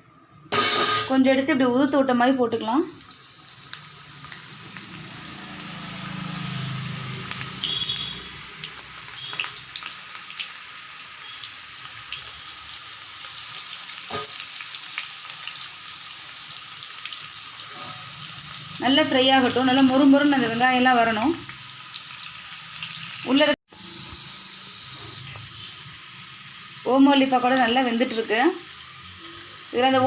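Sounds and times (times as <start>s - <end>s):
batter sizzling in hot oil: 1.9s - 30.0s
oil crackling and popping: 3.1s - 18.7s.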